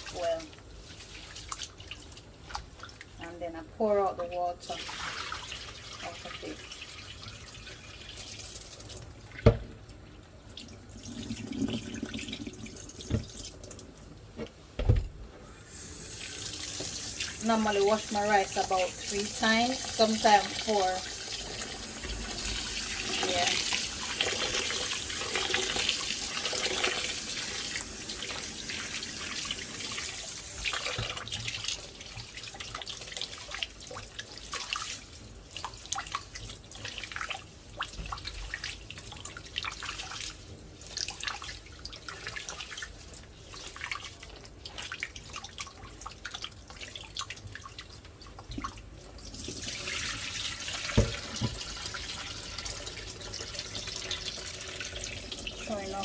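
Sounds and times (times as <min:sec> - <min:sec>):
kitchen tap running: 0:03.8 - 0:14.0, 0:14.8 - 0:36.4, 0:41.0 - 0:56.0
water splashing and dripping: 0:16.3 - 0:56.0.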